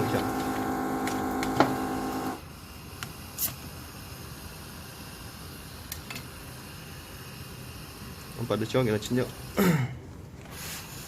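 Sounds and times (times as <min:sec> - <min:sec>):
electric machine hum: 0:00.0 - 0:02.5.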